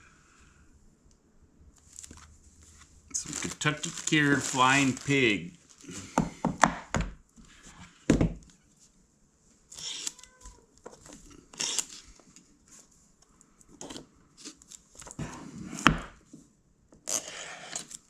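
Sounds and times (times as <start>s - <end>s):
packaging crinkling and tearing: 1.8s - 2.3s, 3.1s - 5.9s.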